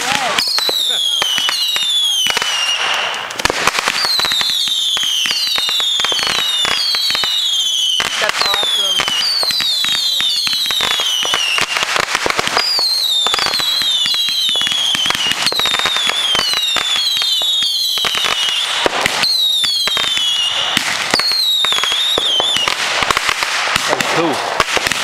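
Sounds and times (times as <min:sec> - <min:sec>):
fireworks popping and crackling: 0:00.0 - 0:25.0
falling whistles: 0:00.4 - 0:03.1, 0:12.6 - 0:18.6, 0:19.2 - 0:22.7.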